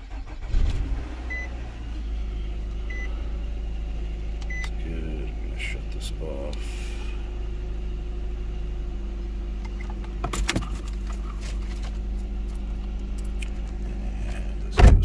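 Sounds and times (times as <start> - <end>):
car engine idling: 0.0 - 15.0
keys rattling and clicking: 9.6 - 15.0
loud thump: 14.8 - 15.0.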